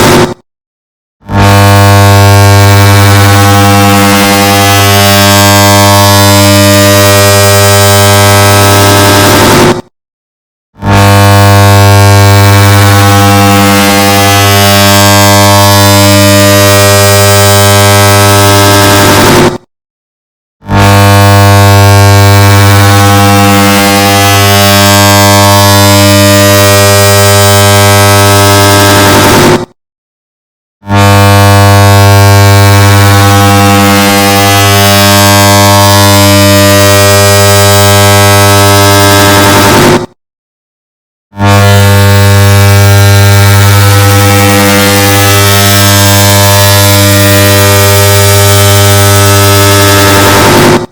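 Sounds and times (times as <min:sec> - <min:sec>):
distorted low-pitched buzz: 0:00.0 - 0:00.4, 0:01.2 - 0:09.9, 0:10.8 - 0:19.7, 0:20.6 - 0:29.8, 0:30.8 - 0:40.2, 0:41.4 - 0:50.9.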